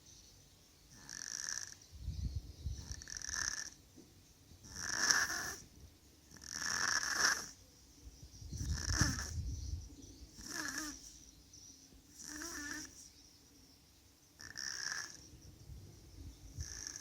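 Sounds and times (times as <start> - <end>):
person snoring: 10.4 - 11.1, 12.2 - 13.0.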